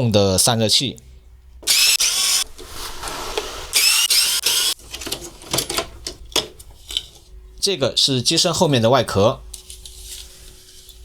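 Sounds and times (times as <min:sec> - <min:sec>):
electric screwdriver whining: 0:01.6 - 0:04.8.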